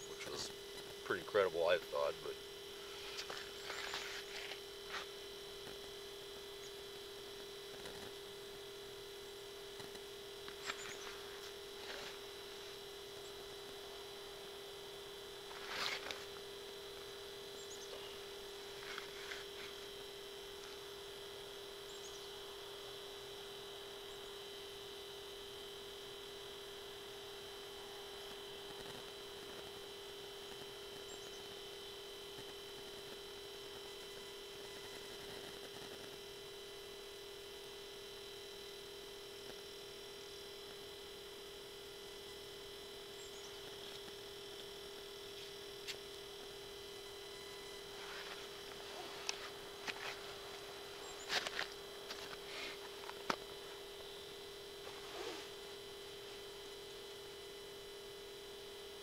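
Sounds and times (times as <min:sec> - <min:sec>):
steady electronic hum: 0:00.0 - 0:59.0.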